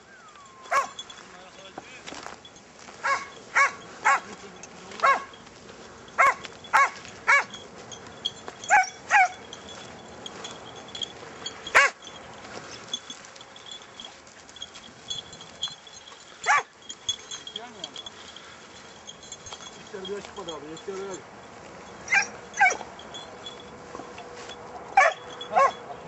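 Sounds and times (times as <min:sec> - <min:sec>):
hound barking: 0:00.3 - 0:01.1, 0:03.0 - 0:04.3, 0:04.9 - 0:05.4, 0:06.2 - 0:07.6, 0:08.6 - 0:09.5, 0:11.6 - 0:12.1, 0:16.4 - 0:16.7, 0:22.0 - 0:22.9, 0:25.0 - 0:26.0.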